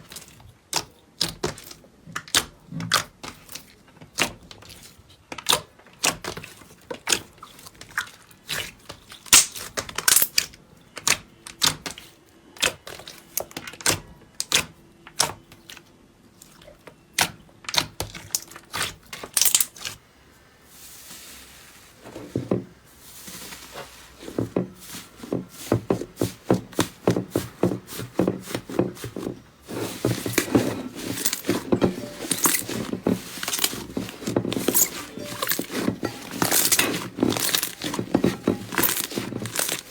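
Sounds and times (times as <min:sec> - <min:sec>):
slime clicking and crackling: 0:08.6 - 0:11.8
soft rustle: 0:20.2 - 0:39.9.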